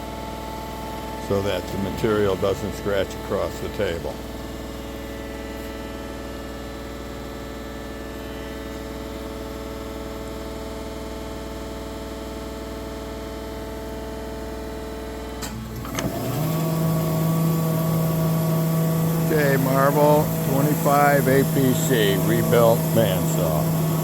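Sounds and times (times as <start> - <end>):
bandsaw humming: 16.0 - 24.0.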